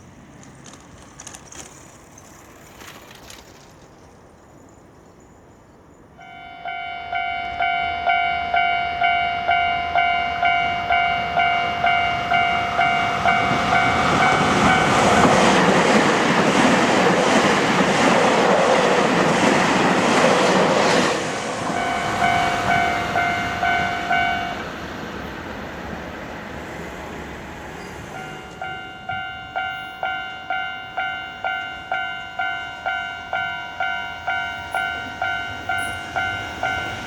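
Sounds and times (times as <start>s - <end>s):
train passing: 0.0s - 37.0s
level-crossing warning bell: 6.2s - 16.5s, 21.6s - 25.2s, 27.4s - 37.0s.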